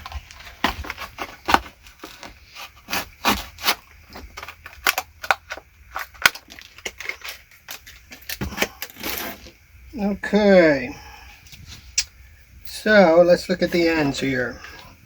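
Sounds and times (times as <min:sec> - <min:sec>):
plastic parts clicking and rustling: 0:00.0 - 0:09.6.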